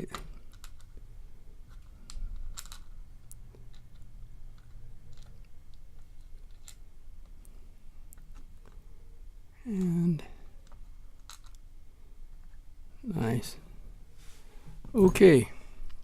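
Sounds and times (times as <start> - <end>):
low steady hum: 0.0 - 16.0
small metal parts clicking: 0.1 - 1.0, 1.7 - 6.9, 10.6 - 11.7.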